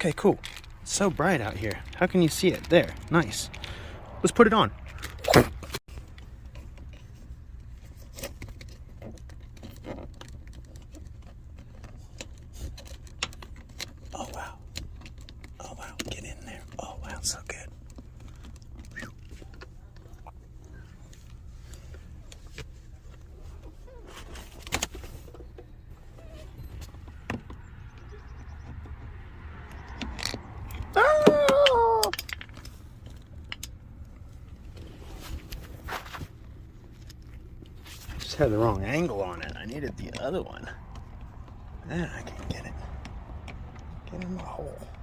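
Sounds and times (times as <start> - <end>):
plastic parts clicking and rustling: 0.0 - 3.8, 4.8 - 20.1, 31.6 - 41.6.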